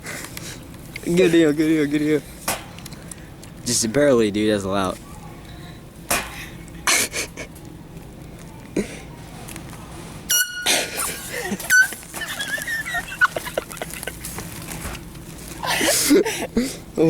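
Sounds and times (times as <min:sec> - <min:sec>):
air horn bursts: 0:10.3 - 0:12.0.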